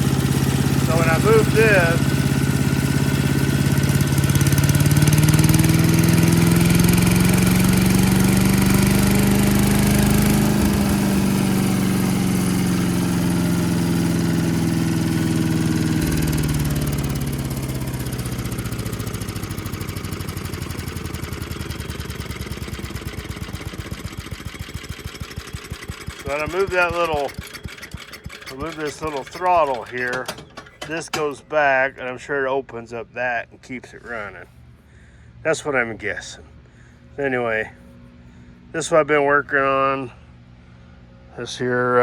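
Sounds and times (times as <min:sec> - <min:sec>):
wood chipper engine running: 0:00.0 - 0:32.1.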